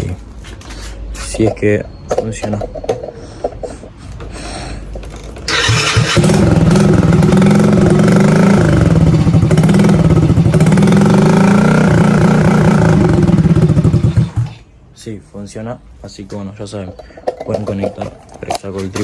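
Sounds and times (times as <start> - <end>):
small motorcycle engine running: 5.5 - 14.6.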